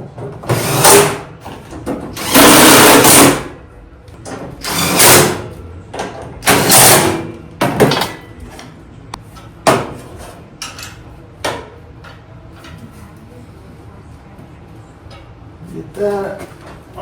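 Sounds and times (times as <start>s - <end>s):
power driver running bolts: 0.5s - 1.3s, 2.2s - 3.5s, 4.6s - 5.5s, 6.4s - 7.3s.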